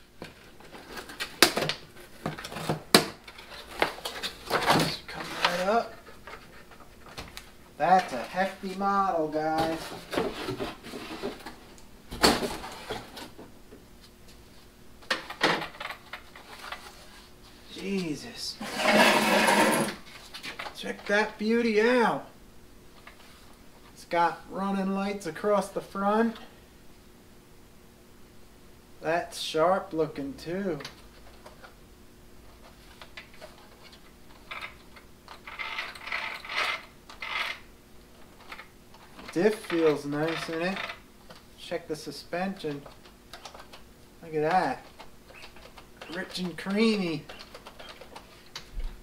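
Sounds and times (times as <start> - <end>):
scraping rustling bursts: 18.6 - 20.6.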